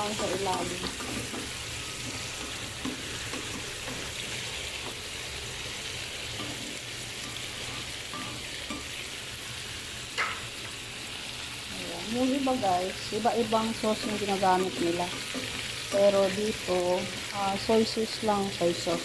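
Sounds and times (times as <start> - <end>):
fish sizzling in a pan: 0.0 - 19.0.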